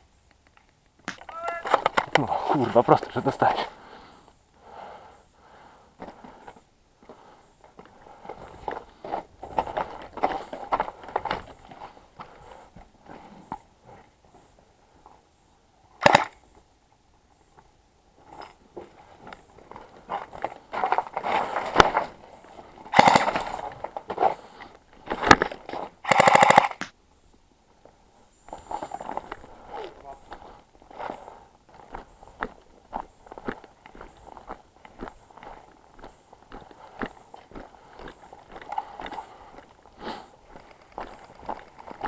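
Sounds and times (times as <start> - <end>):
airsoft guns firing: 16.0 - 16.4, 22.9 - 23.6, 26.0 - 27.0
rustling: 17.3 - 26.6.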